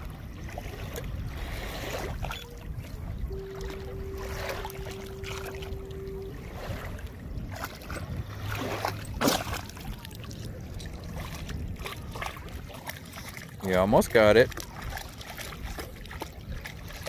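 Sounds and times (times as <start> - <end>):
shallow water splashing: 0.0 - 17.0
steady tone: 2.2 - 11.1.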